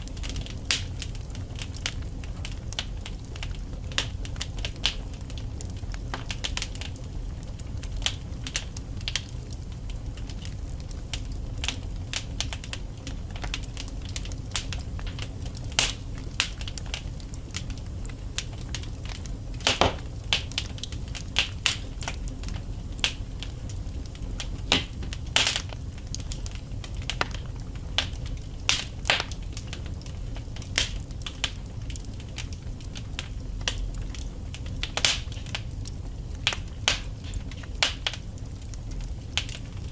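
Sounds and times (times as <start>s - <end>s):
burning logs crackling and popping: 0.0s - 39.9s
fire flames rumbling: 0.0s - 39.9s.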